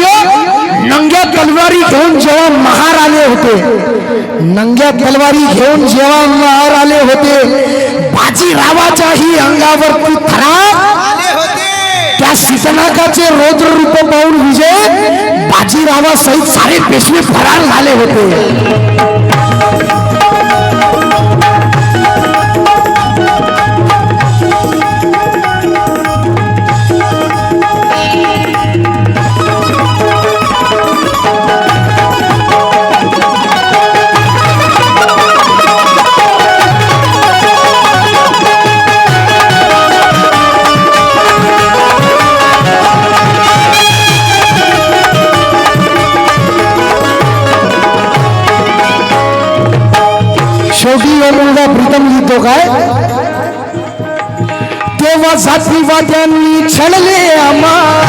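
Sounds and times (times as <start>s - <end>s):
hand drum rhythm: 14.7s - 58.0s
melody of long held notes: 18.0s - 56.7s.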